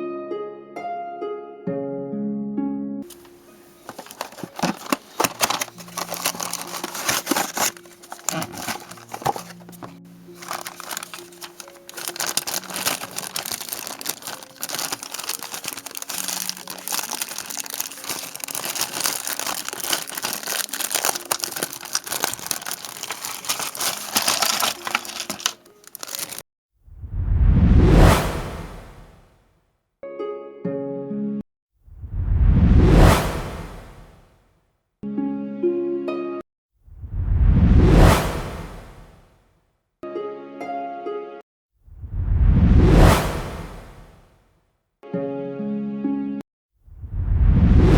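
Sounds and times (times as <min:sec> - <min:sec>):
soft background music: 0:00.0 - 0:26.3
plastic packaging crinkling: 0:03.0 - 0:26.4.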